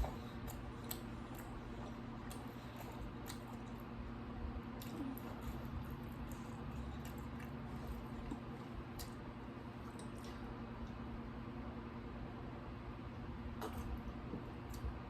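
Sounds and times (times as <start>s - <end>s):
chewing with wet mouth clicks: 0.0s - 4.0s, 4.7s - 11.0s, 13.6s - 15.0s
steady low hum: 0.0s - 15.0s.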